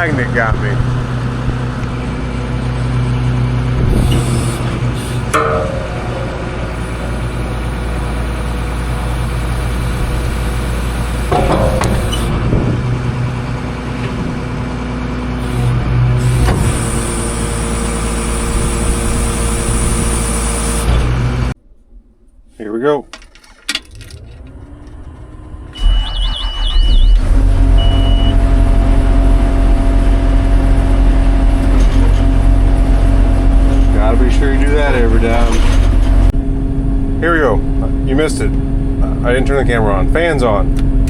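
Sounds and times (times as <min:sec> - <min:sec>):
metallic clunks and knocks: 0:05.0 - 0:07.8, 0:11.3 - 0:14.4
diesel engine idling: 0:24.5 - 0:35.2.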